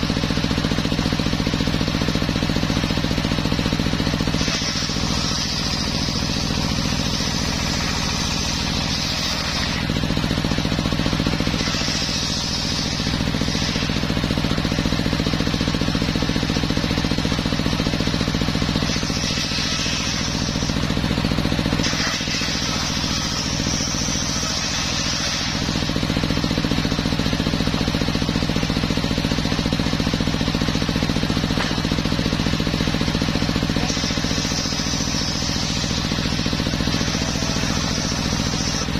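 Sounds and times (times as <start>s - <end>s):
sawmill machine hum: 0.0s - 38.9s
saw blade cutting wood: 4.0s - 15.0s, 18.6s - 26.3s, 33.1s - 38.9s.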